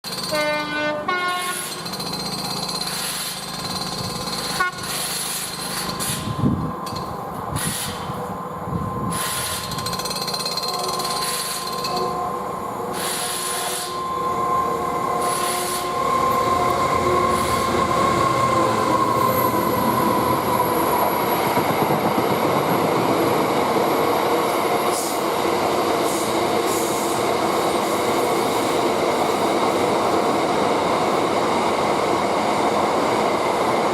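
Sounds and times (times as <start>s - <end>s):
freight train rolling by: 0.0s - 33.9s
diesel locomotive horn: 0.3s - 1.8s, 4.5s - 5.0s, 12.0s - 19.6s.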